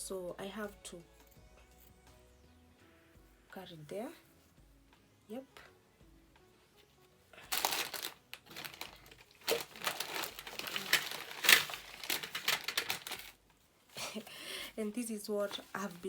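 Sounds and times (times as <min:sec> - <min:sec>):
fibres rustling: 0:06.8 - 0:16.0.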